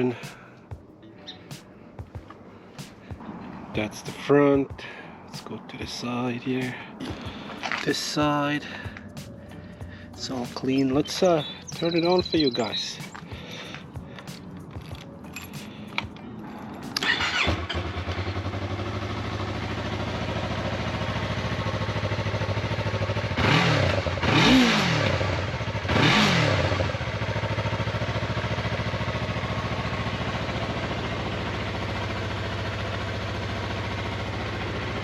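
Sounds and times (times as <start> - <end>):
motorcycle engine idling: 0.0 - 35.0
motorcycle engine revving: 16.8 - 35.0
electric starter: 16.9 - 18.4.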